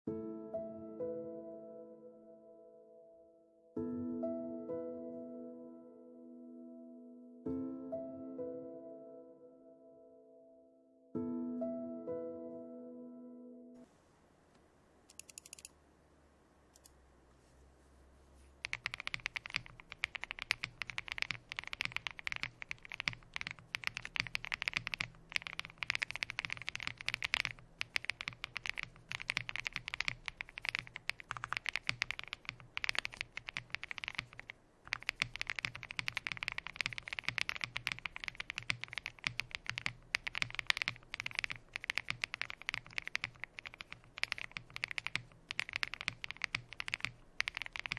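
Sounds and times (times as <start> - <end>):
fast typing on mechanical keyboard: 15.1 - 15.7, 18.6 - 47.9.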